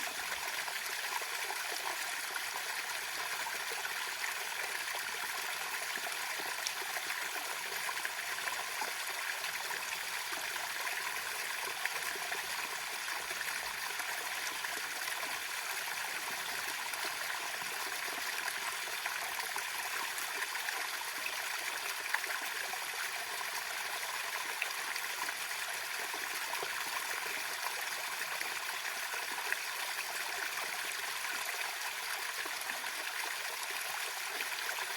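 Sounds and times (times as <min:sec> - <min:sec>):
waterfall splashing and trickling: 0:00.0 - 0:34.9.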